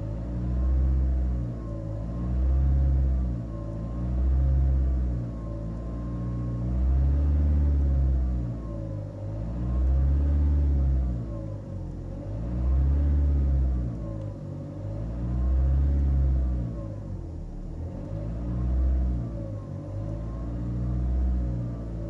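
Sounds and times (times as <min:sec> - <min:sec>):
diesel engine revving: 0:09.2 - 0:22.0.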